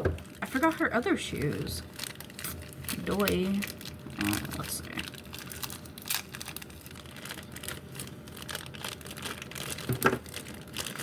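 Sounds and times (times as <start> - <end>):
plastic packaging crinkling: 0.2 - 11.0.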